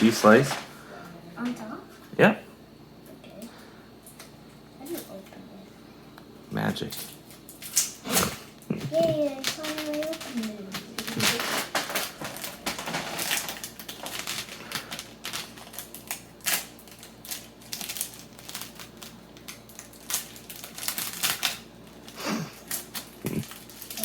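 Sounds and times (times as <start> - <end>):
plastic wrapper crinkling: 9.2 - 24.0.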